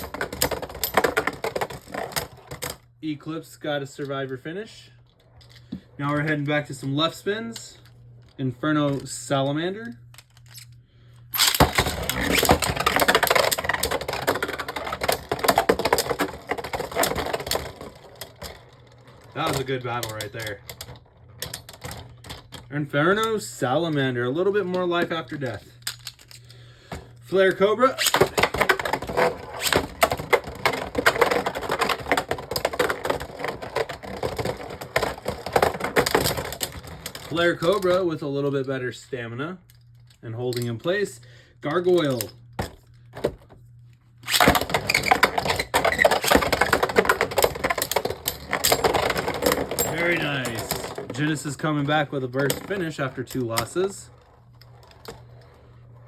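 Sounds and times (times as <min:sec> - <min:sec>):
spinning tops clashing and scraping: 0:10.1 - 0:24.0, 0:27.9 - 0:38.0, 0:44.2 - 0:56.0.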